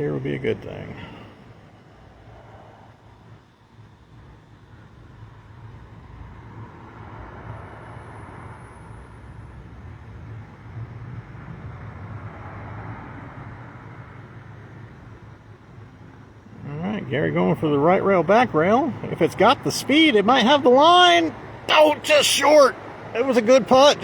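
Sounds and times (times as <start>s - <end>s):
vehicle passing: 20.9s - 24.0s.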